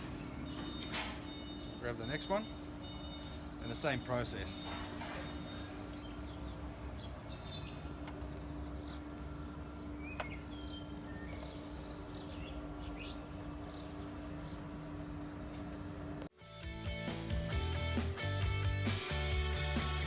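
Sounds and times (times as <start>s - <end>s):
birds chirping: 0.0s - 15.8s
steady low hum: 0.0s - 16.3s.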